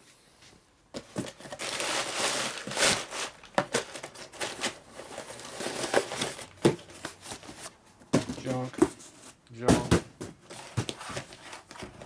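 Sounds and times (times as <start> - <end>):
packaging crinkling: 1.2 - 7.4
items clicking and knocking: 3.5 - 12.0.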